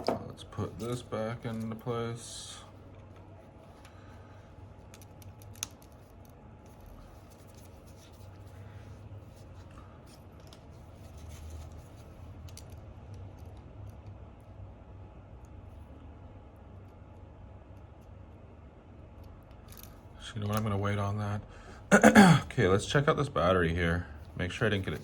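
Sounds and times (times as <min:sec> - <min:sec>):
small phone parts clicking: 0:04.9 - 0:06.4.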